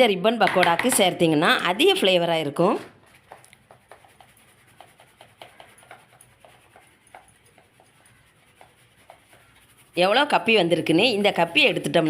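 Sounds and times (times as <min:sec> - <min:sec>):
flour sifting through mesh sieve: 0:02.8 - 0:12.0.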